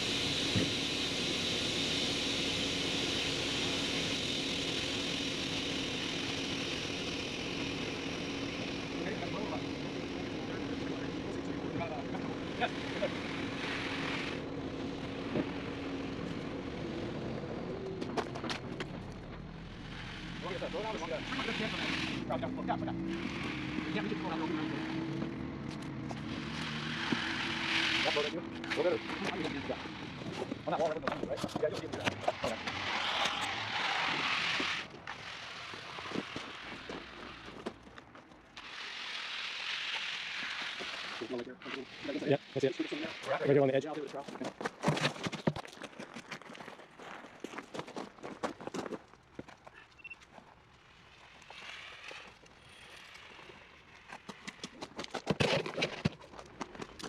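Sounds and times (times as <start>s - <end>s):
steady rushing hiss: 0.0s - 18.0s, 19.3s - 31.0s, 32.3s - 37.5s, 38.6s - 44.1s
truck engine running: 0.0s - 38.8s.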